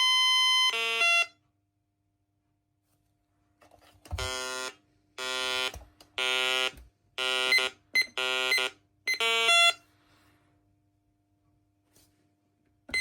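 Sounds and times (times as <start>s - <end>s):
harsh buzzing alarm tone: 0.0s - 1.4s, 4.1s - 9.8s.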